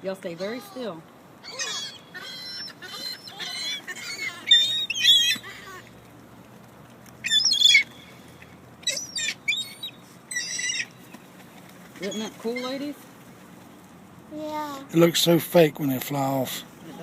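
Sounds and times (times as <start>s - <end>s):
birds squawking: 0.3s - 6.0s, 7.2s - 13.0s.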